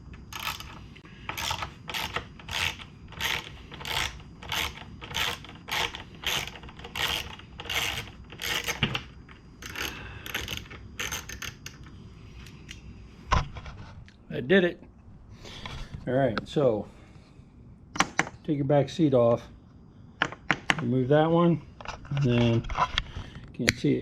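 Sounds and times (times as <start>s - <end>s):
ratchet wrench clicking: 0.2s - 9.0s, 9.6s - 11.8s.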